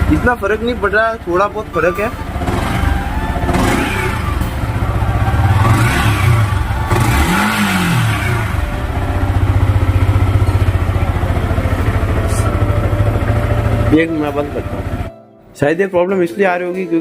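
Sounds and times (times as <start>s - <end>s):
motorcycle engine revving and idling: 0.0s - 15.1s.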